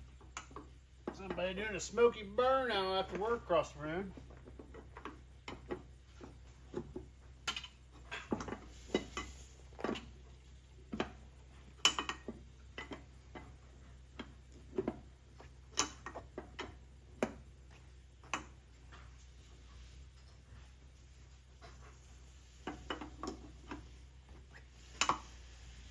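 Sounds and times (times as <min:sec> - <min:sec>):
metal clicks and knocks from hand tools: 0:04.4 - 0:10.2, 0:11.8 - 0:15.0, 0:15.7 - 0:19.0, 0:24.8 - 0:25.3.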